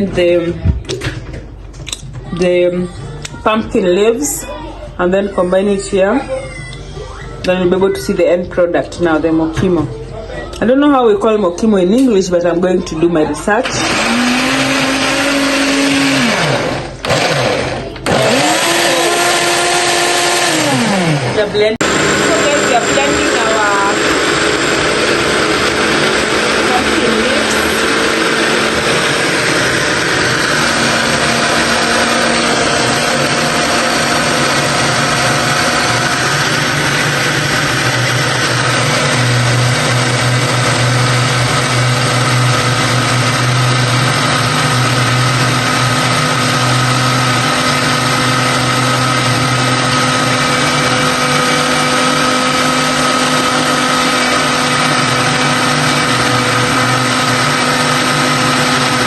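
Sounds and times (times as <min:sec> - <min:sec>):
electric blender running: 0:13.5 - 0:59.0.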